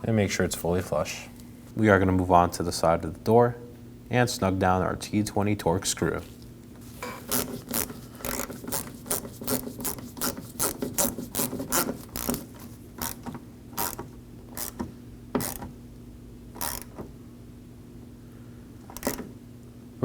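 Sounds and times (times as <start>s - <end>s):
hand ratchet clicking: 7.0s - 15.7s, 16.6s - 17.1s, 18.9s - 19.3s.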